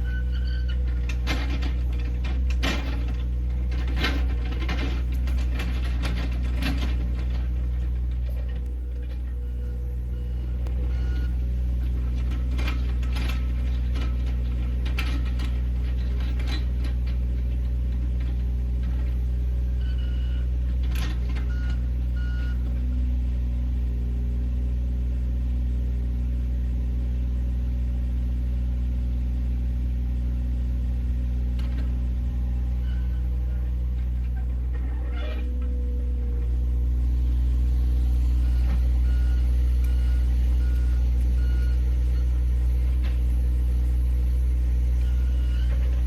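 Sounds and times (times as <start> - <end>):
diesel engine running: 0.0 - 46.0
short warning beeps: 38.4 - 42.5.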